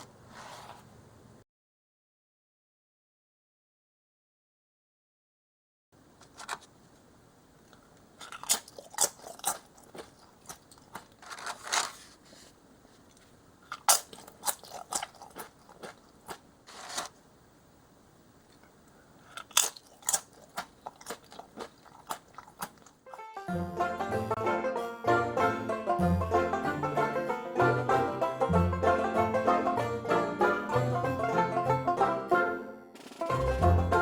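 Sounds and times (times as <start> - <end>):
chewing crunchy chips: 8.2 - 11.8, 13.6 - 17.1, 19.2 - 23.0.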